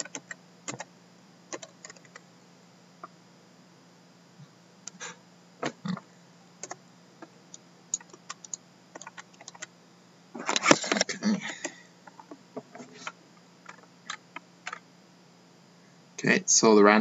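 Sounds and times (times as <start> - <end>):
computer keyboard typing: 0.0 - 0.9, 1.5 - 2.2, 6.6 - 6.8, 7.9 - 9.7, 13.7 - 14.8.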